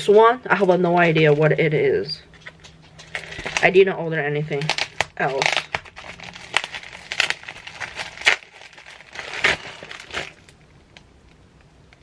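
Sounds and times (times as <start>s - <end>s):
packaging crinkling and rustling: 0.5s - 11.1s.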